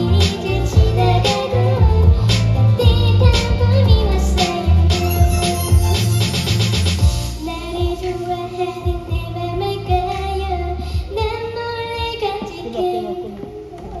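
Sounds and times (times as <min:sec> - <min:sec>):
child singing: 0:00.0 - 0:05.7, 0:07.4 - 0:14.0
instrumental accompaniment: 0:00.0 - 0:10.0.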